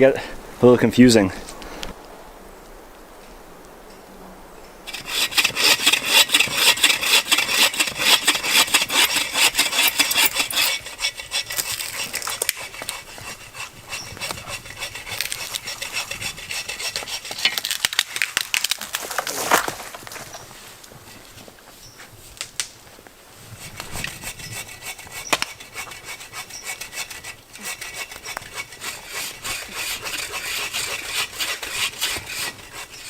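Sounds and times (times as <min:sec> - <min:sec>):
hand saw cutting wood: 0:04.9 - 0:18.4, 0:23.6 - 0:33.0.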